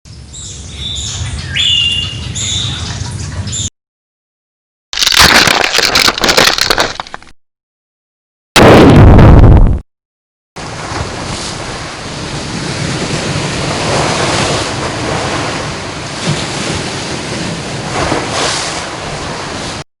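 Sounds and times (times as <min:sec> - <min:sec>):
rushing water: 0:10.6 - 0:19.8.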